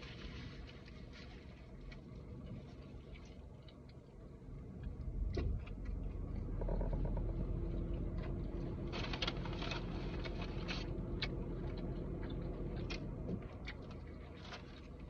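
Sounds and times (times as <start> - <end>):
steady low hum: 0.0 - 15.0
food packaging rustling: 8.8 - 11.1.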